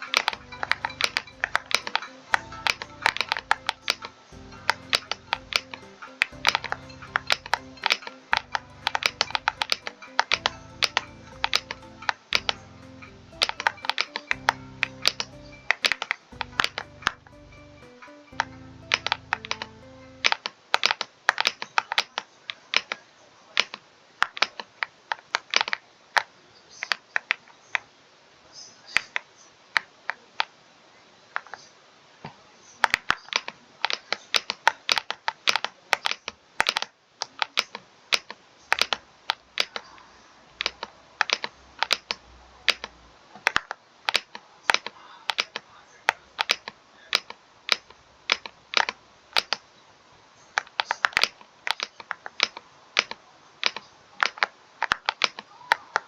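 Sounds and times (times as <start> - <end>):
typing on computer keyboard: 0.0 - 23.0, 32.9 - 39.9, 40.6 - 49.6, 50.6 - 56.0.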